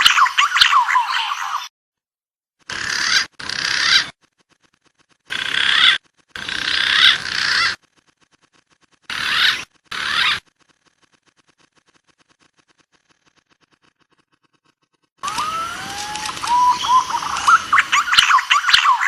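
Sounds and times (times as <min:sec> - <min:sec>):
whistled pigeon lure calls: 0:00.0 - 0:01.7, 0:15.2 - 0:19.0.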